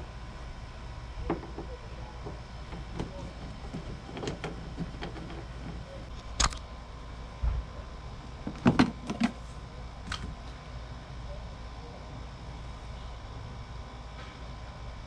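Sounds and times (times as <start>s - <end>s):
steady low hum: 0.0s - 15.0s
sharp clicks of trim parts: 2.7s - 6.6s.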